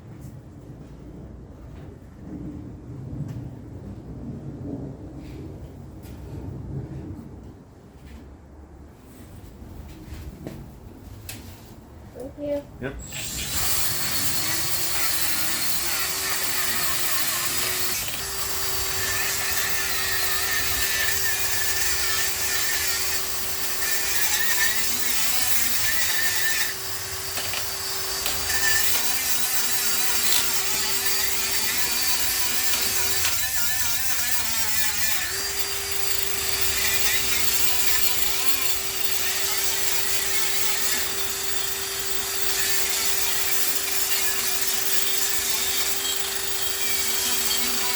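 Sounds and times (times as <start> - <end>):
power tool sanding: 13.0 - 47.9.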